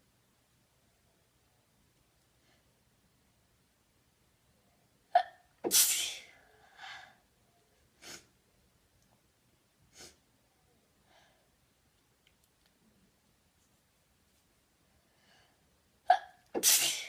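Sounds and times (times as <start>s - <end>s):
woman sneezing: 5.2s - 6.3s, 16.1s - 17.0s.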